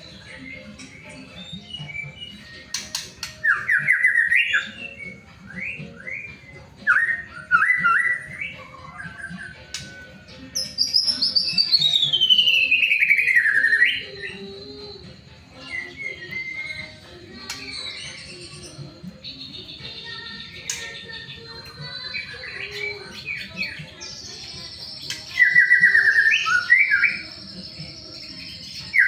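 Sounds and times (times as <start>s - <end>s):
bird singing trilled whistles: 0.0s - 15.0s, 15.6s - 29.0s.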